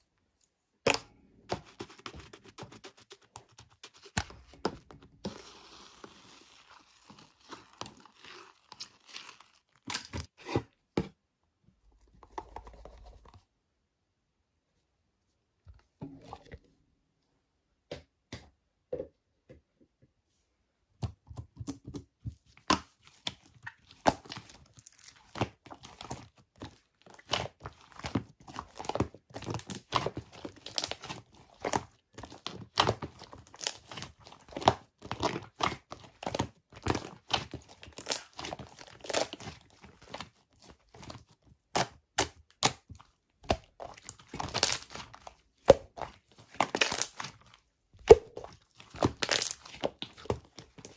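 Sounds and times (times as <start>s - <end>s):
paper crinkling and tearing: 48.6s - 50.9s.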